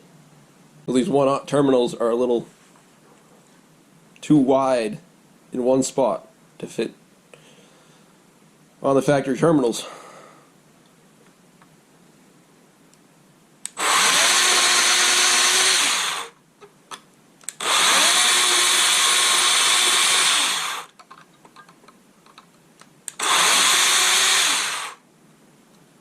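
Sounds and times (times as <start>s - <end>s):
power tool grinding metal: 13.8s - 16.3s, 17.6s - 20.9s, 23.2s - 25.0s.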